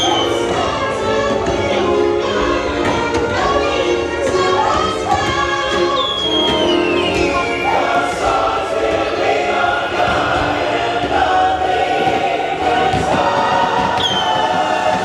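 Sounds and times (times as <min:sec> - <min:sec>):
choir singing: 0:00.0 - 0:15.0
music soundtrack: 0:00.0 - 0:15.0
whistle-like falling tone: 0:05.9 - 0:08.0, 0:14.0 - 0:14.4.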